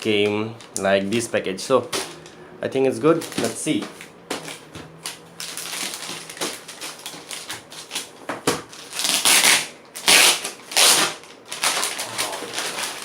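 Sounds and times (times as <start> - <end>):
packaging clicks and rustling: 3.2 - 13.0
packaging ripping: 3.2 - 13.0.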